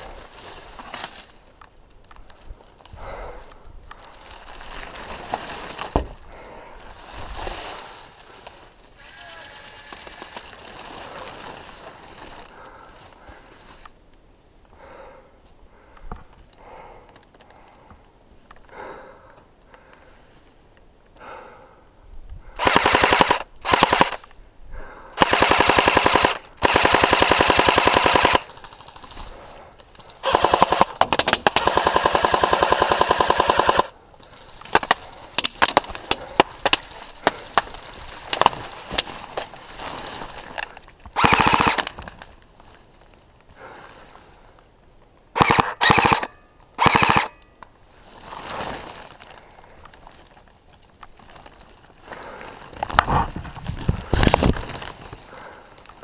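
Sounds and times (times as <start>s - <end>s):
airsoft gun bursts: 22.6s - 24.2s, 25.2s - 28.6s, 30.2s - 33.9s, 41.2s - 41.9s, 45.4s - 47.4s.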